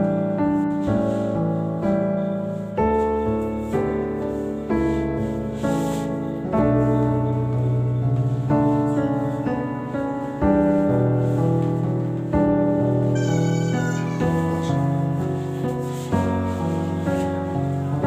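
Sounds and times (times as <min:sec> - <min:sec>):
slow piano chords: 0:00.0 - 0:18.0.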